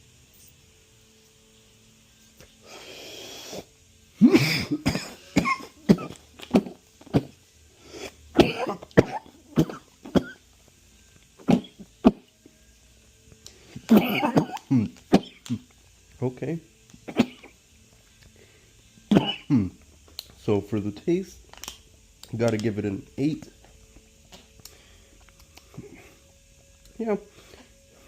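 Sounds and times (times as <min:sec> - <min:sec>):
vape pen inhale hiss: 0:02.4 - 0:03.8, 0:07.7 - 0:08.4, 0:27.3 - 0:28.0
man coughing: 0:04.2 - 0:06.7, 0:08.4 - 0:10.4, 0:13.9 - 0:15.6, 0:19.1 - 0:19.7.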